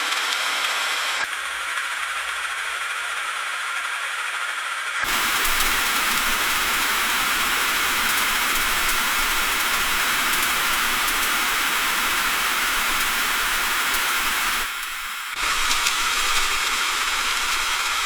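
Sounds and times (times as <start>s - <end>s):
freezing rain hissing on a car: 5.0s - 18.0s.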